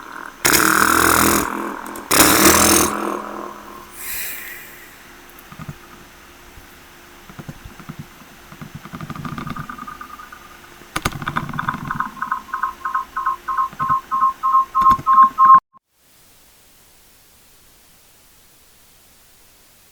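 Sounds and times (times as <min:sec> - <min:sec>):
faint hiss: 0:03.6 - 0:07.2, 0:15.9 - 0:19.9
rapid two-pitch electronic beeping: 0:09.6 - 0:15.6.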